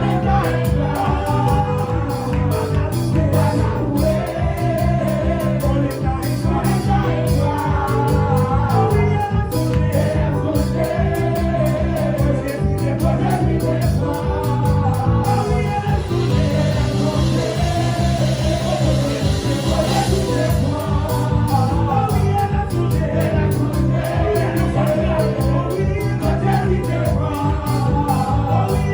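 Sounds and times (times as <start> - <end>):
people singing: 0.0 - 28.9
praise band playing: 0.0 - 28.9
sharp beat strokes: 10.6 - 22.8.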